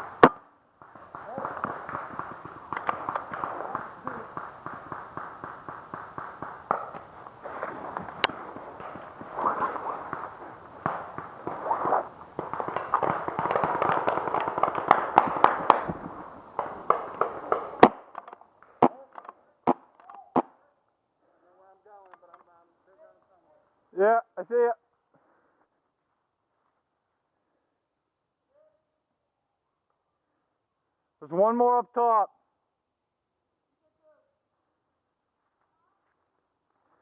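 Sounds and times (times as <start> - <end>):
sharp cracks: 0.0 - 20.6
paintball markers firing: 0.2 - 20.5.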